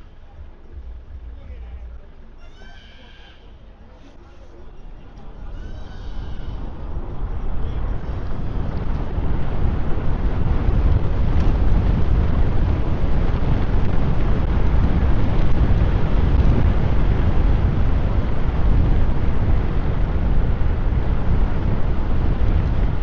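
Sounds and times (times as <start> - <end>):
road rumble: 0.0 - 23.0
wind rush: 3.1 - 23.0.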